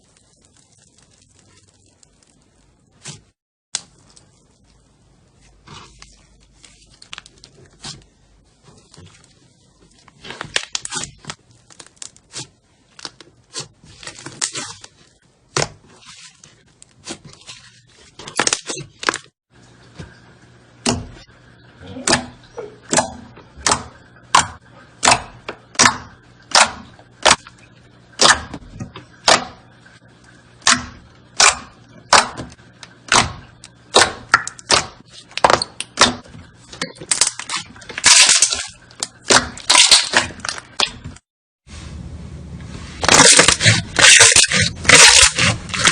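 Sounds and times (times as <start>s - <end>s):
slime popping and crackling: 0.0s - 17.6s, 30.6s - 41.2s, 43.0s - 45.9s.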